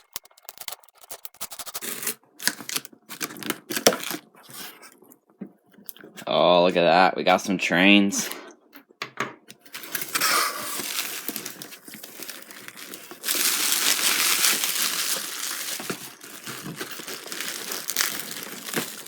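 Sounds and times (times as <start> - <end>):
packing material crinkling: 0.0 - 5.0, 9.7 - 19.0.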